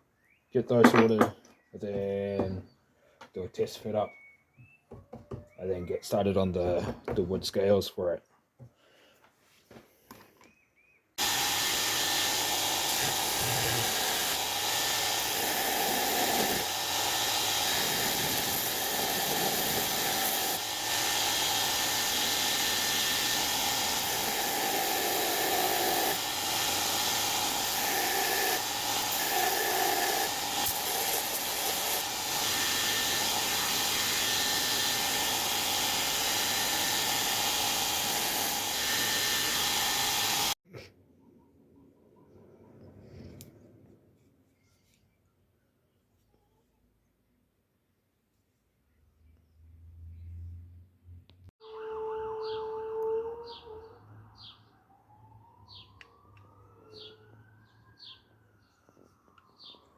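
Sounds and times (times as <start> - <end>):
power tool whirring: 11.2 - 40.6.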